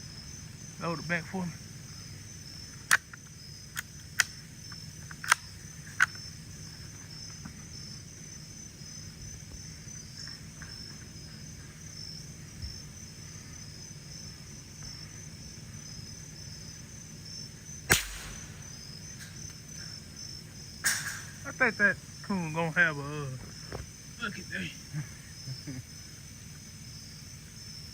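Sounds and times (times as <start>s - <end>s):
crickets chirping: 0.0s - 27.9s
rifle clicks: 2.8s - 6.2s, 17.9s - 18.8s.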